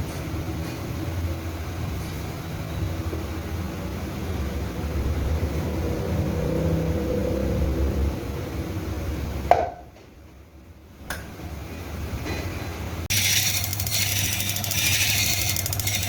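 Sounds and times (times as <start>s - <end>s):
workshop machinery humming: 11.1s - 16.0s.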